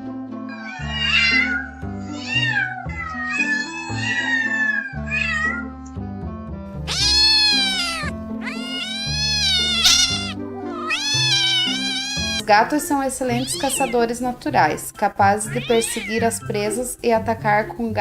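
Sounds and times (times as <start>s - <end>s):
background music: 0.0s - 18.0s
cat meowing: 0.5s - 5.7s, 6.8s - 12.4s, 13.3s - 14.1s, 15.4s - 16.8s.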